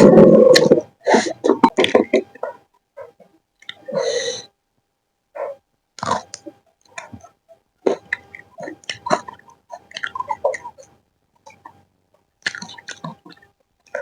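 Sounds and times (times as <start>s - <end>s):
person chewing: 6.0s - 11.7s, 12.4s - 14.0s.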